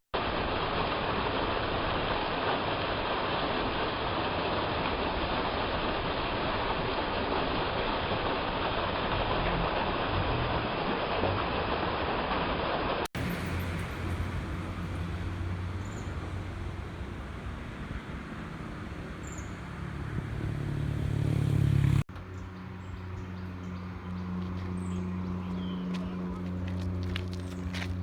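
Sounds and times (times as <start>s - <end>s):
even rushing noise: 13.2s - 22.1s
low engine hum: 13.2s - 28.0s
vehicle engine running: 13.2s - 28.0s.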